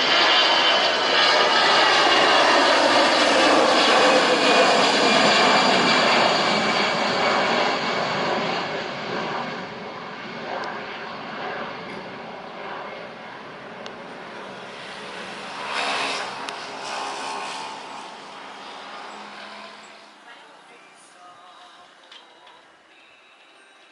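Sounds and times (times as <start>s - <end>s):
jet engines at takeoff: 0.0s - 23.9s
road vehicle passing: 14.0s - 21.0s.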